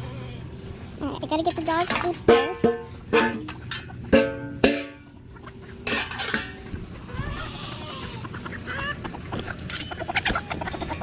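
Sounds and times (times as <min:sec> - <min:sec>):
rattling clatter of dog food: 0:01.4 - 0:04.8, 0:05.8 - 0:06.7, 0:09.4 - 0:11.0
ringing metal clanks: 0:01.4 - 0:06.8, 0:09.6 - 0:10.1
poultry calling: 0:03.5 - 0:11.0.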